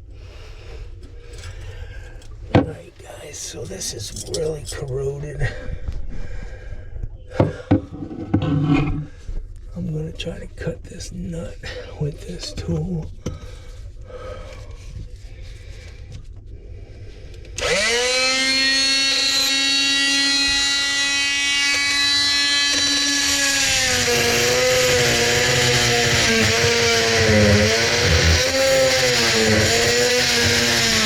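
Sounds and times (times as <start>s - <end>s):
power tool whining: 17.5s - 31.0s
power tool cutting metal nut: 17.6s - 31.0s.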